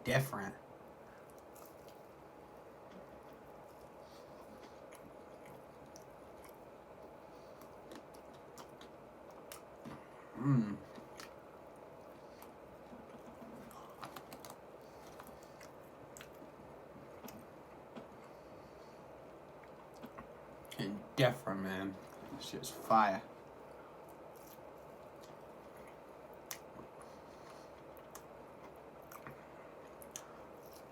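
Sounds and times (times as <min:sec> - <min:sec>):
person chewing food: 0:01.0 - 0:02.2, 0:02.8 - 0:10.2, 0:10.8 - 0:20.8, 0:24.0 - 0:30.9
person humming: 0:10.4 - 0:10.9.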